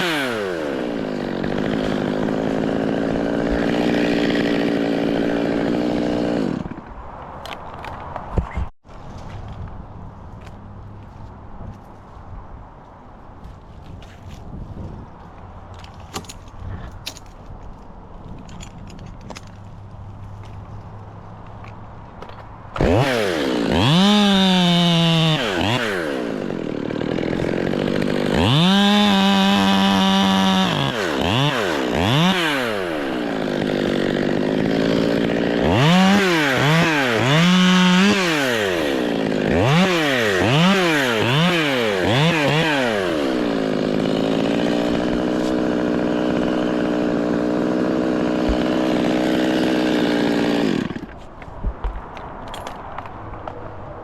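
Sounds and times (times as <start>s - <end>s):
chainsaw engine revving: 0.0s - 6.8s, 22.8s - 51.1s.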